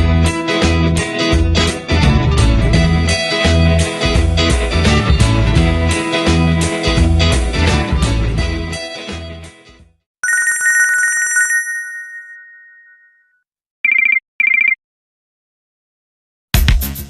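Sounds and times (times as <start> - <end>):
musical ringtone: 10.2 - 13.3.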